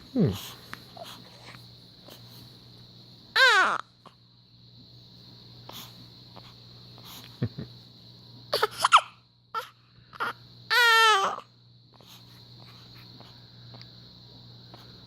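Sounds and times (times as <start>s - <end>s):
baby fussing and crying: 3.4s - 3.8s, 8.5s - 9.0s, 9.6s - 11.4s.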